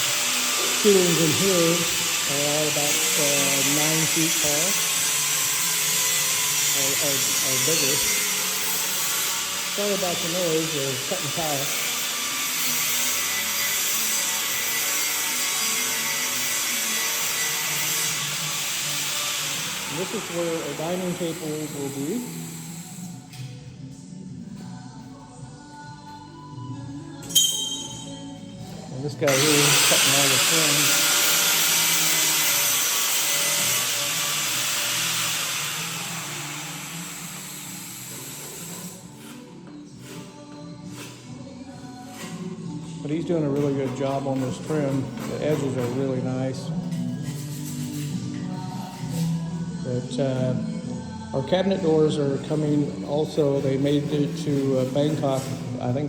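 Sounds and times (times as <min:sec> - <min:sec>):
power saw cutting tile: 0:00.0 - 0:22.4, 0:29.3 - 0:39.4.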